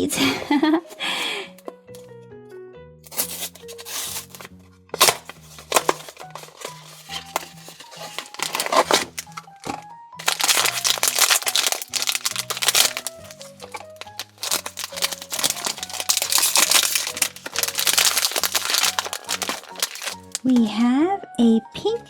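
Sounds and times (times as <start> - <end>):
cheerful background music: 0.0 - 22.0
plastic packaging crinkling: 3.1 - 20.6.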